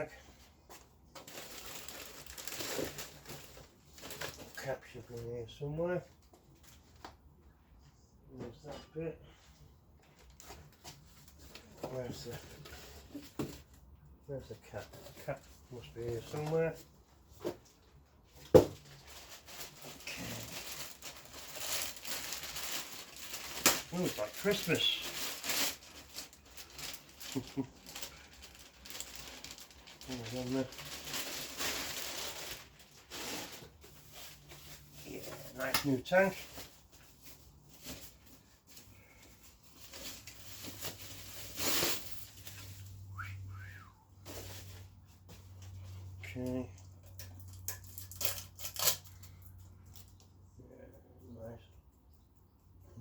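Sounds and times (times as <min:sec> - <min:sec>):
packaging rustling and crinkling: 0:00.0 - 0:04.9, 0:14.7 - 0:43.0, 0:44.2 - 0:46.1.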